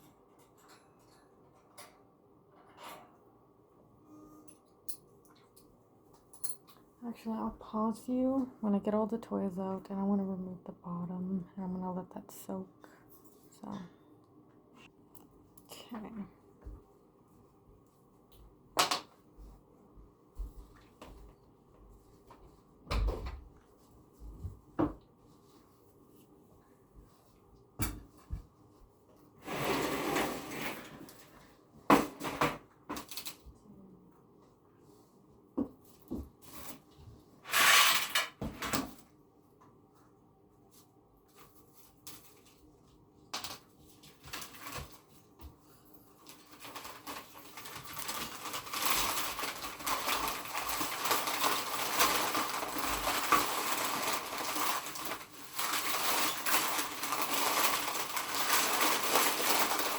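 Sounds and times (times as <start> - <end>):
rustling: 46.0 - 59.9
cage parts clattering: 46.3 - 59.9.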